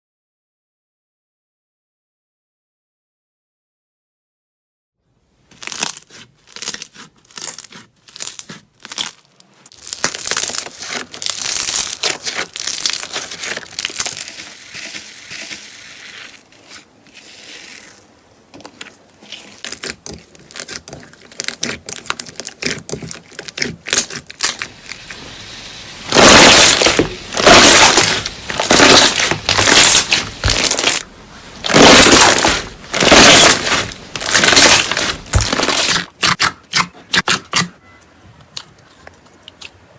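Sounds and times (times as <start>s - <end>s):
slime squishing: 5.4s - 37.6s
slime crackling and popping: 5.5s - 37.3s.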